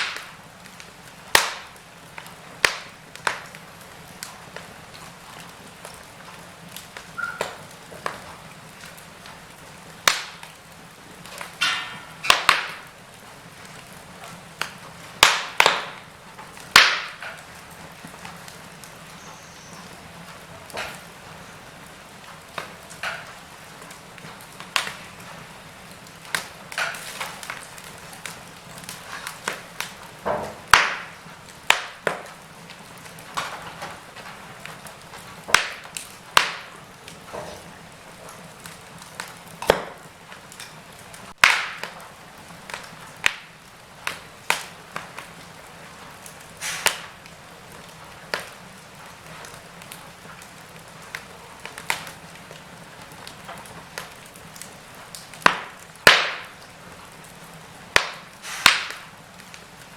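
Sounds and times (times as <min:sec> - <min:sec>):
wood fire crackling and popping: 0:00.0 - 0:59.9.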